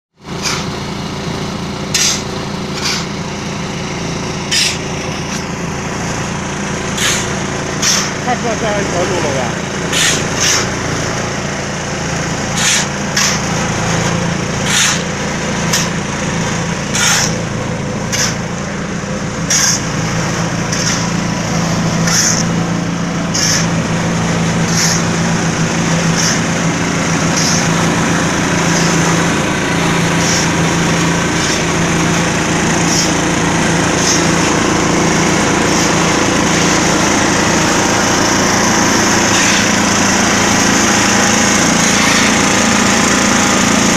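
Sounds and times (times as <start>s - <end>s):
diesel concrete mixer engine running: 0.2s - 43.9s
high hissing clatter: 1.9s - 3.2s, 4.4s - 5.5s, 6.1s - 8.4s, 9.8s - 10.8s, 12.5s - 16.0s, 16.9s - 43.9s.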